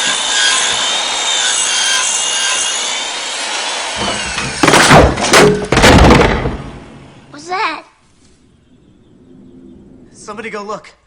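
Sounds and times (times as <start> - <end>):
rasping sawing grinding: 0.0 - 4.8
loud knocks: 4.0 - 7.0.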